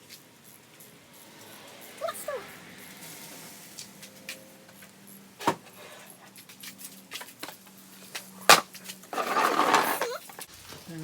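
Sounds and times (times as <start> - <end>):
metal parts rattling: 9.1 - 10.5.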